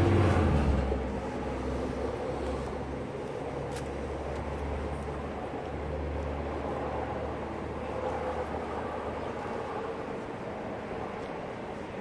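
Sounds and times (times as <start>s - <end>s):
traffic engine hum: 0.0s - 12.0s.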